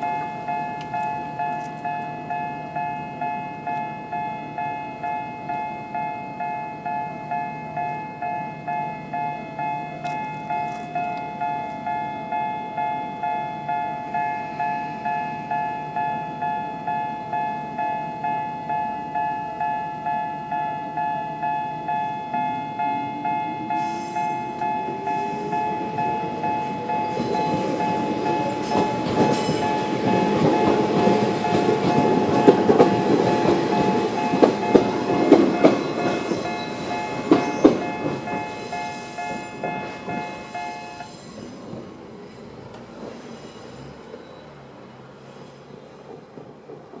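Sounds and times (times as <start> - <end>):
level crossing bell: 0.0 - 41.1
train wheels clattering: 22.8 - 47.0.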